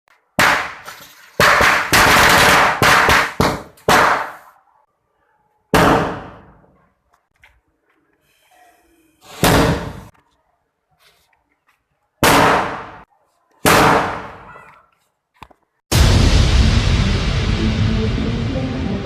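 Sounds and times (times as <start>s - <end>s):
firecrackers banging: 0.4s - 4.5s.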